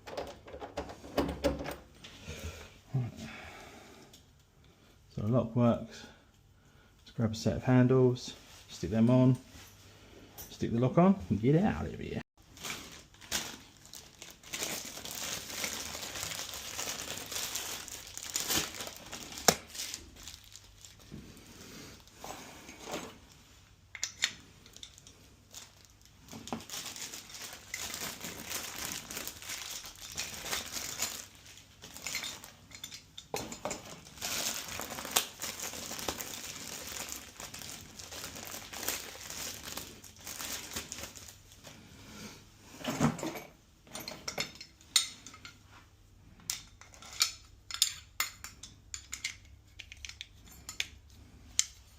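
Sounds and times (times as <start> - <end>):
packaging crinkling and rustling: 12.4 - 21.2, 24.6 - 32.8, 33.6 - 41.8.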